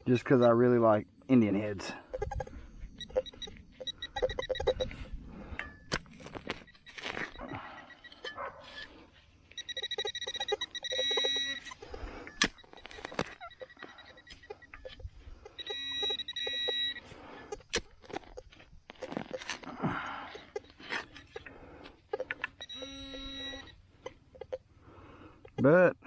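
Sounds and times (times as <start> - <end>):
metal detector pulsing beep: 0.2 - 24.7
digging knocks and scrapes in soil: 3.0 - 24.1.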